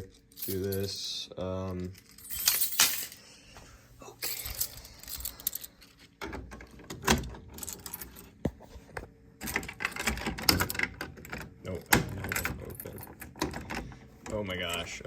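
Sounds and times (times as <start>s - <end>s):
keys and metal hardware rattling: 0.0s - 3.3s, 4.2s - 8.4s, 9.4s - 13.8s.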